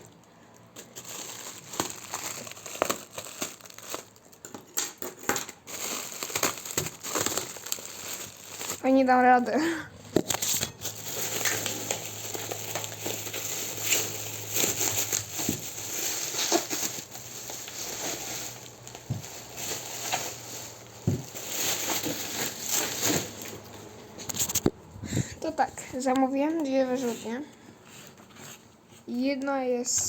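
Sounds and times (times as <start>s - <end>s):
packaging crinkling and rustling: 0.0s - 9.4s, 10.1s - 24.8s.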